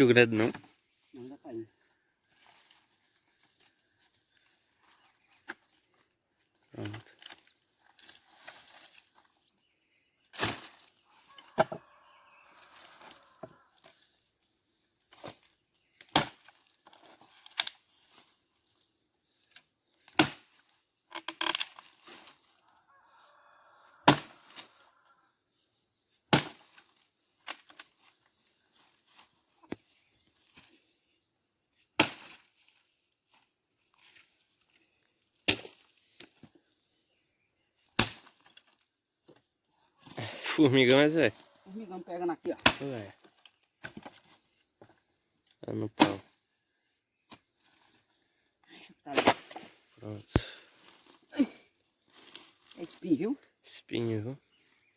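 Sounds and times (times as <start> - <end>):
wood chopping cracks: 16.0 - 16.5, 20.1 - 21.9, 24.0 - 24.6, 38.0 - 38.6, 42.6 - 43.0, 46.0 - 46.2.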